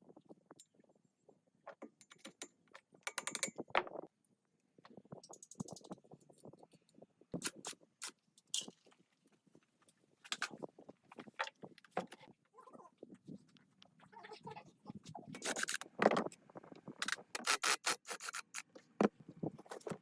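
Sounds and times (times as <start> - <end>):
hand tools clicking and rattling: 3.1 - 3.6, 15.4 - 16.4, 17.0 - 18.7.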